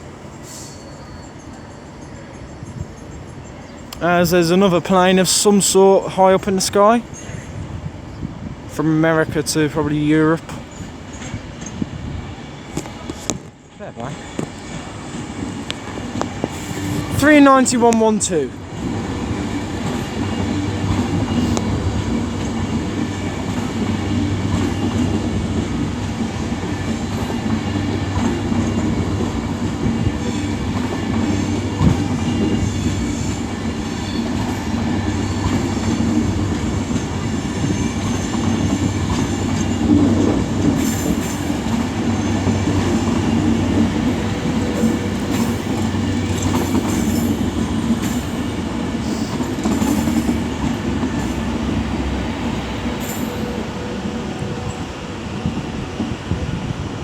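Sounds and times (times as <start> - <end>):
electric train humming: 0.0 - 57.0
train wheels clacking: 14.2 - 56.5.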